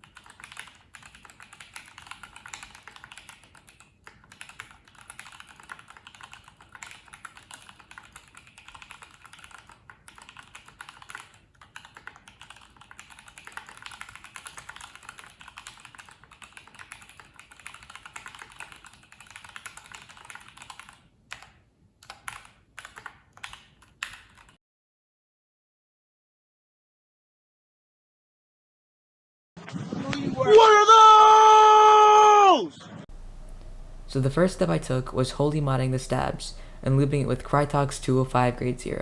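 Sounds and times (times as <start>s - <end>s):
typing on mechanical keyboard: 0.0s - 24.6s.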